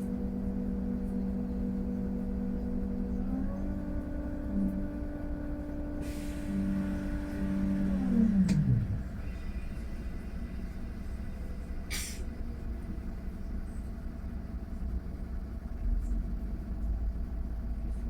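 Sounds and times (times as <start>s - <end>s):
bus interior low rumble: 0.0s - 18.0s
short hiss: 11.9s - 12.3s.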